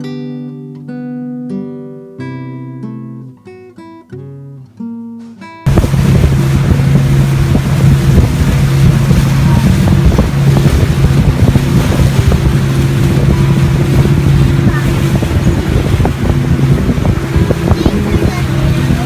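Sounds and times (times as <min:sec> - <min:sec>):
acoustic guitar music: 0:00.0 - 0:19.0
boat motor running: 0:05.7 - 0:19.0
wind buffeting microphone: 0:05.7 - 0:19.0.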